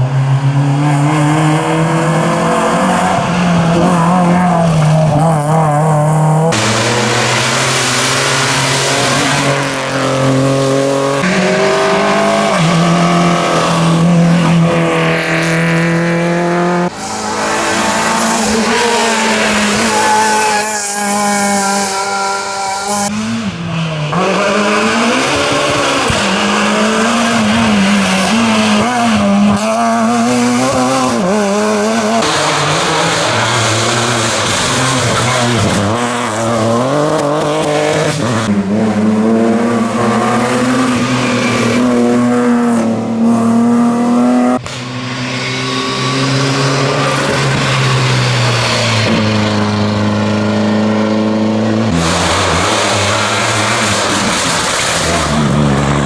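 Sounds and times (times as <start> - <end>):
rally car engines revving: 0.0 - 56.0
tyres squealing: 16.9 - 23.1.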